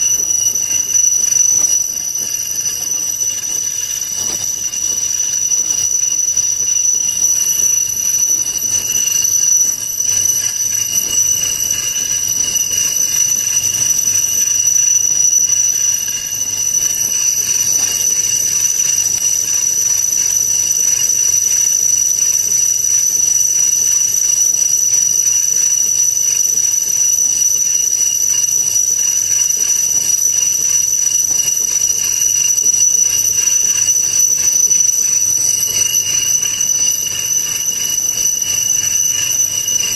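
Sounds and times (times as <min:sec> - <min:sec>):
high-pitched metallic squeal: 0:30.2 - 0:39.9.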